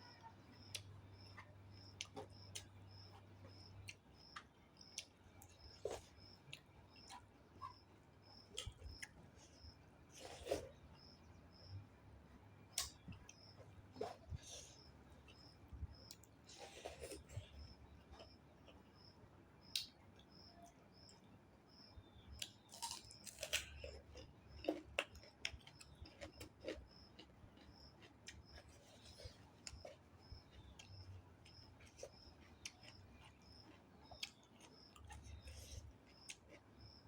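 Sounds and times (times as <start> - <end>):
chewing and mouth clicks: 8.4 - 10.7, 22.4 - 37.0.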